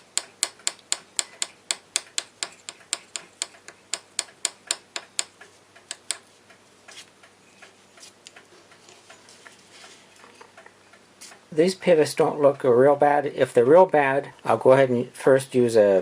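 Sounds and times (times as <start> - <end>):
sharp ticks: 0.0 - 6.6.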